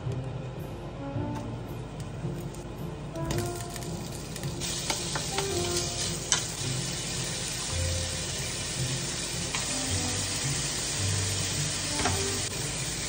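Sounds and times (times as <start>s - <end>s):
food sizzling in frying pan: 3.9s - 13.0s.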